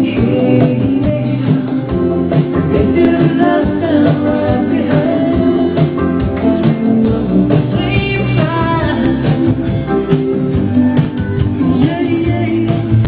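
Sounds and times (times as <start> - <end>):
song with singing and guitar: 0.0 - 13.0.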